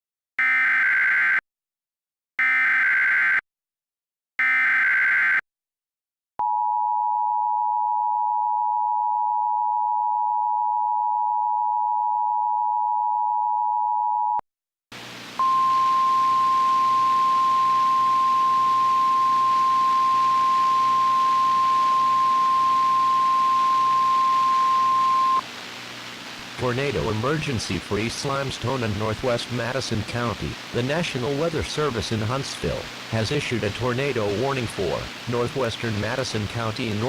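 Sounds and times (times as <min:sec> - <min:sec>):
steady warning alarm tone: 0:15.4 - 0:25.4
two-tone attention signal: 0:15.4 - 0:25.4.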